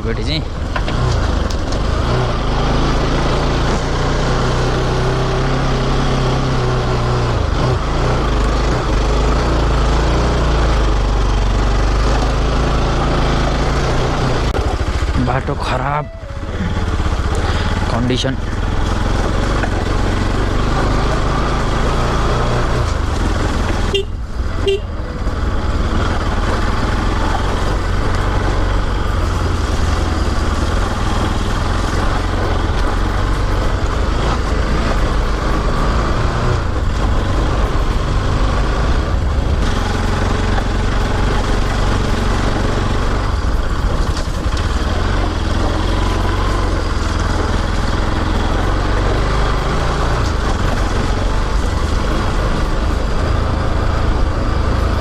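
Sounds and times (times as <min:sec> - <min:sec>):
motorcycle engine running: 0:00.0 - 0:55.0
short tones: 0:15.9 - 0:17.2.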